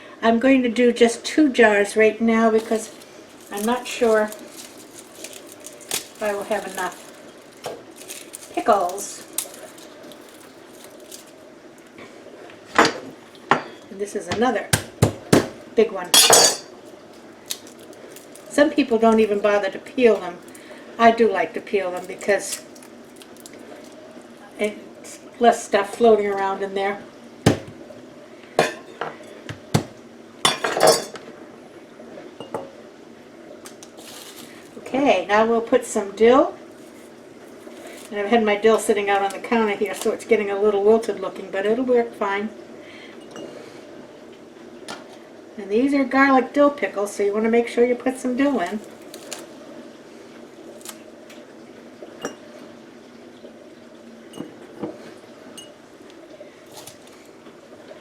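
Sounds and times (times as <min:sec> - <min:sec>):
low background hum: 0:00.0 - 0:58.0
knife and glass jars clinking: 0:16.2 - 0:16.7, 0:30.5 - 0:31.2.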